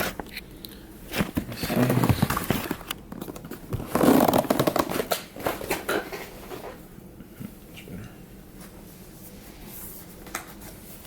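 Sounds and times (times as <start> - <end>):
leather cover rustling and scraping: 1.2 - 2.9, 3.7 - 4.9.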